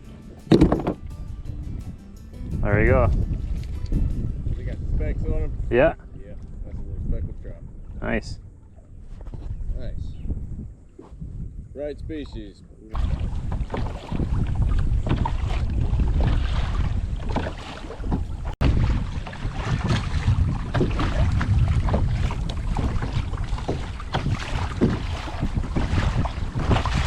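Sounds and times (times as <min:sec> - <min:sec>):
water splashing around kayak: 0:00.0 - 0:01.2, 0:12.9 - 0:27.0
wind buffeting microphone: 0:00.0 - 0:27.0.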